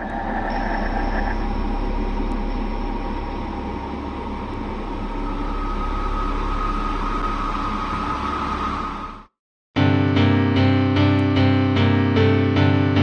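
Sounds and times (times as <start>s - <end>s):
steady rumbling noise: 0.0s - 9.4s.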